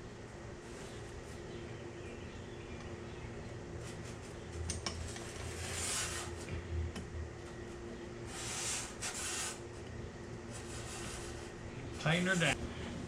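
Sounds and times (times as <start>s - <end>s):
scraping rustles: 3.8s - 6.6s.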